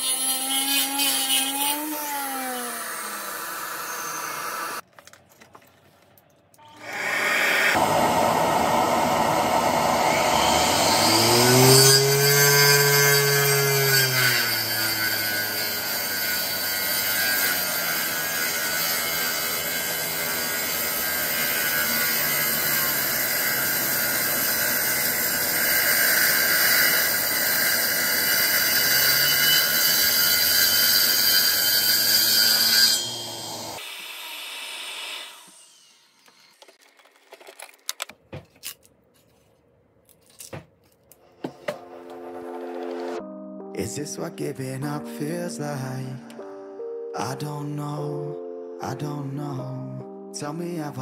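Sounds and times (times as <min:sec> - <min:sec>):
circular saw cutting wood: 0:00.0 - 0:04.8, 0:06.6 - 0:36.8.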